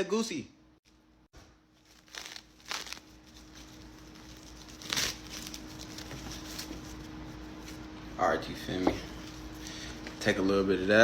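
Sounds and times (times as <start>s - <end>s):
faint steady hum: 0.0s - 11.0s
crinkling rustling handling: 1.8s - 7.9s.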